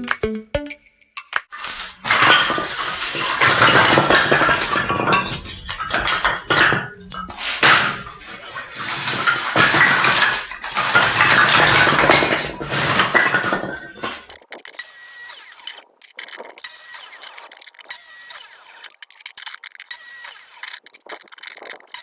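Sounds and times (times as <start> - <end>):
sawing wood: 1.5 - 19.0.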